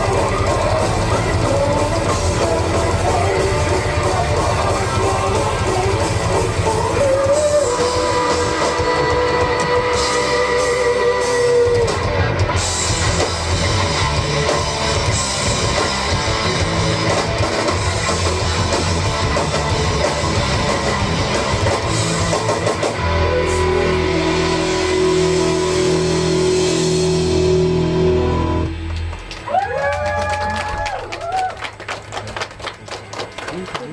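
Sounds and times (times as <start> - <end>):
long held guitar notes: 0.0 - 29.5
drum kit: 0.0 - 30.0
distorted electric guitars: 0.0 - 31.0.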